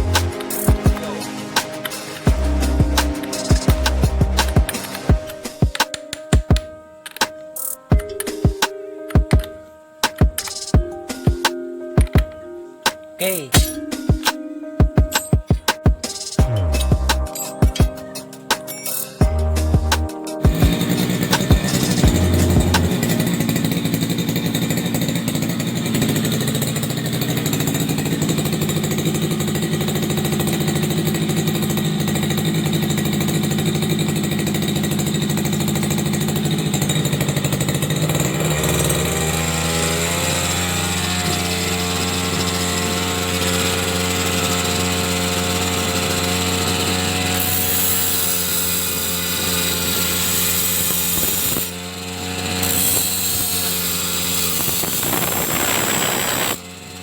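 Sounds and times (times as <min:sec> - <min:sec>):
small machine motor running: 0:20.4 - 0:57.0.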